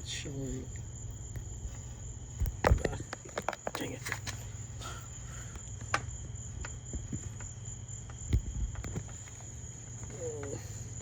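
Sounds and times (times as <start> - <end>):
high cricket-like trill: 0.0 - 11.0.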